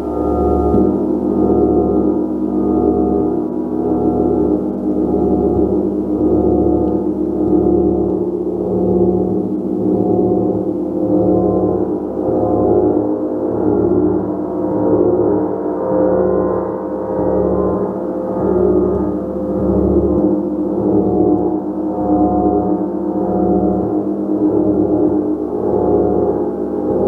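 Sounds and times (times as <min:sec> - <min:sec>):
gong ringing: 0:00.0 - 0:07.5.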